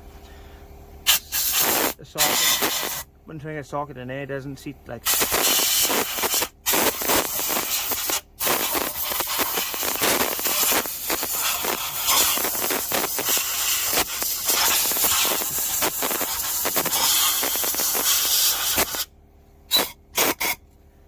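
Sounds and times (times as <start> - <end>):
compressed air blow gun hissing: 1.1 - 3.0, 5.0 - 19.1, 19.7 - 20.6.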